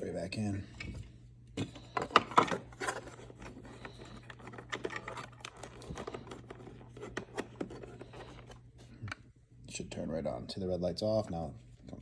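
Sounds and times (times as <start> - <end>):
steady low hum: 0.0 - 12.0
plastic clicks and scrapes: 1.8 - 8.6.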